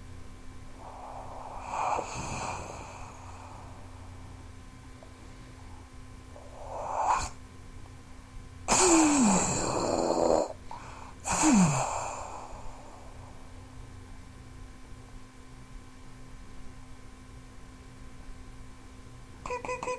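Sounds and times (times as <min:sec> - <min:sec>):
mouth hissing blasts: 0:00.8 - 0:03.9, 0:06.4 - 0:07.4
breathy mouth whoosh: 0:00.8 - 0:04.0, 0:06.4 - 0:07.4.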